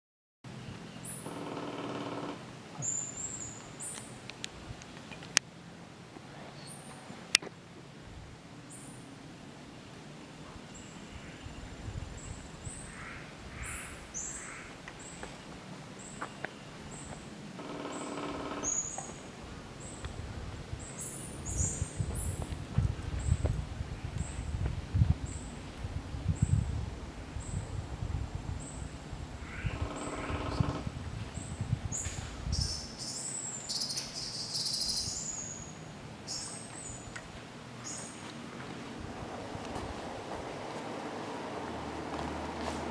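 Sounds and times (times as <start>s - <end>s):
harsh raspy bird calls: 1.0s - 4.0s, 12.8s - 14.8s, 17.6s - 19.2s, 29.4s - 37.2s.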